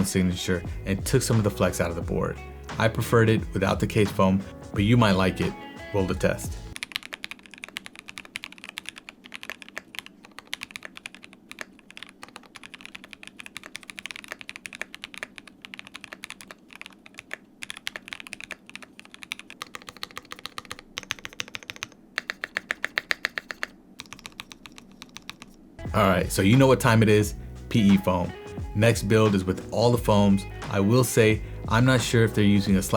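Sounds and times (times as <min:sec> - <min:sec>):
dampened mechanical keyboard typing: 0:06.8 - 0:25.6.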